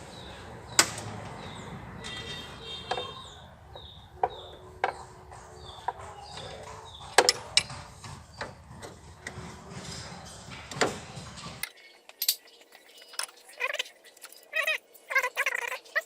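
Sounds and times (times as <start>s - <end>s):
metal tools clinking: 11.6s - 13.5s.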